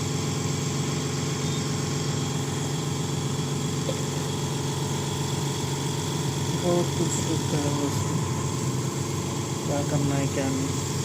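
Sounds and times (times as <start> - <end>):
workshop machinery humming: 0.0 - 11.0.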